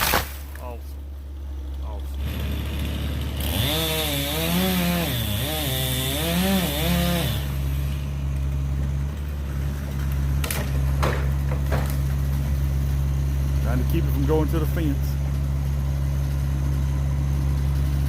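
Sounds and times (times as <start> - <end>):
sharp cracks: 0.0 - 0.8, 9.8 - 12.3
diesel machine droning: 0.0 - 18.0.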